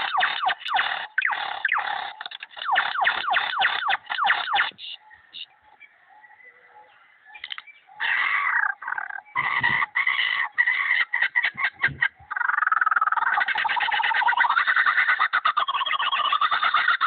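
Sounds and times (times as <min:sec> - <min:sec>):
lyrebird mimicking laser zaps: 0:00.0 - 0:05.0, 0:09.4 - 0:17.0.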